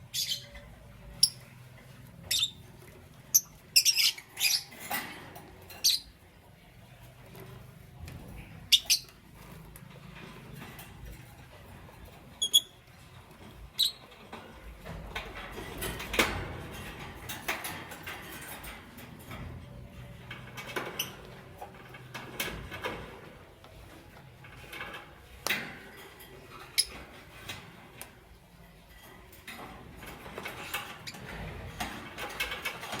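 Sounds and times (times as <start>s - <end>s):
birds clicking and scratching: 0.0s - 33.0s
bird chirps: 0.1s - 1.4s, 2.3s - 2.6s, 3.3s - 4.7s, 8.7s - 9.1s.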